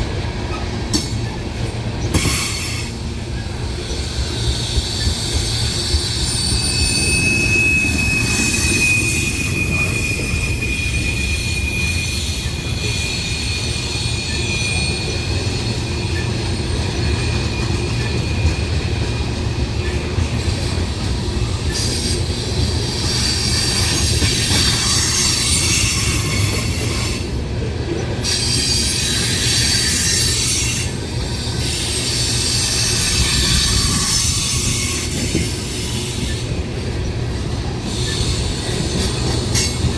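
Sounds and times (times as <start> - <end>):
freight train rolling past: 0.0 - 39.9
high wheel squeal: 2.2 - 19.1, 19.8 - 27.3, 37.8 - 39.9.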